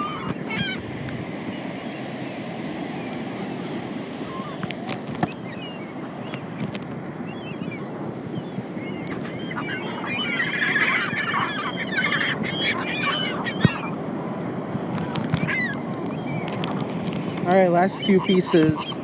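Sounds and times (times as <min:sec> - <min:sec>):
seagulls squawking: 0:00.0 - 0:00.8, 0:03.0 - 0:14.0, 0:15.3 - 0:16.8, 0:17.4 - 0:19.0.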